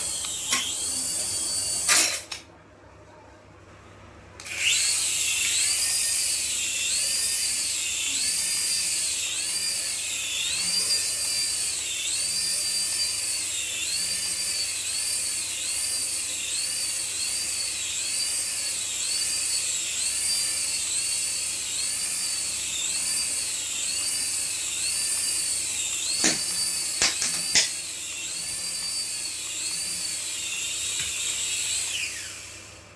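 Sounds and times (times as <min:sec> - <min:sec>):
toy motor whine: 0:04.4 - 0:32.8.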